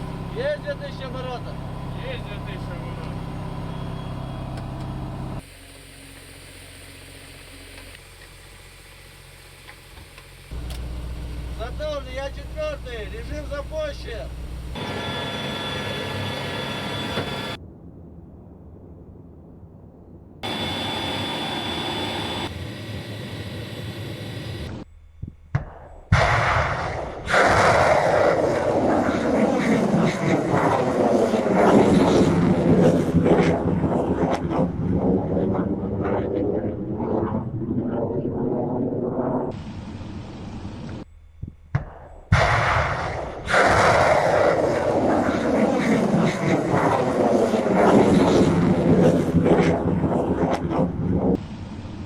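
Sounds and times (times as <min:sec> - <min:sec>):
vehicle engine running: 0:00.0 - 0:17.6
machinery rushing roar: 0:10.5 - 0:17.6, 0:20.4 - 0:24.8, 0:27.3 - 0:40.9, 0:43.5 - 0:52.0.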